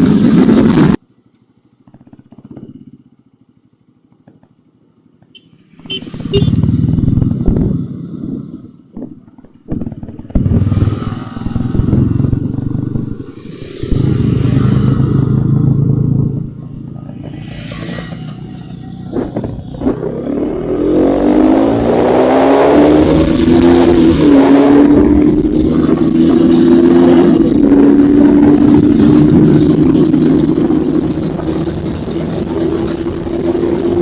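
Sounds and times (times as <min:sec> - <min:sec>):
motorcycle engines revving: 0:00.0 - 0:34.0.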